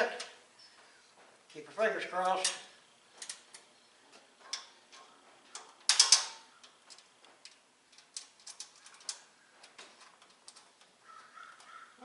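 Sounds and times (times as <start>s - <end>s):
metal parts clinking: 4.4s - 10.8s.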